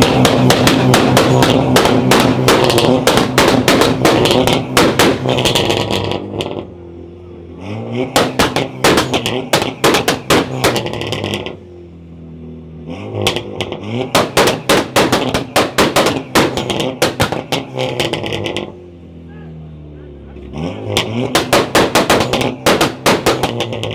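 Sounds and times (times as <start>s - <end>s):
exhaust bangs and cracks: 0.0s - 6.9s, 8.0s - 12.2s, 13.2s - 18.8s, 20.8s - 23.9s
sports car engine revving: 0.0s - 23.9s.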